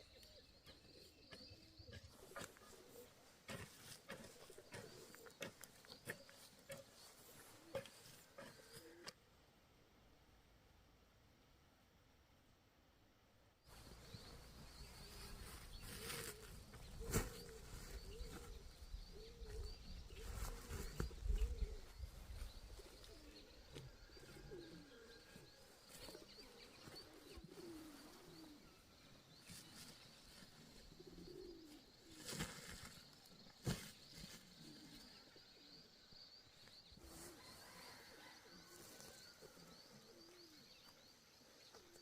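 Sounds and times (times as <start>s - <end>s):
birds low arching calls: 0.0s - 9.2s, 13.7s - 36.0s.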